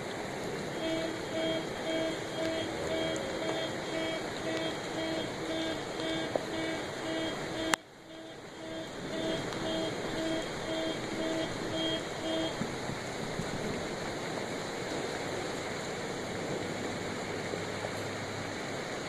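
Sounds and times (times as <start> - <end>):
steady rain: 0.0 - 19.0
electronic beeping: 0.8 - 12.6.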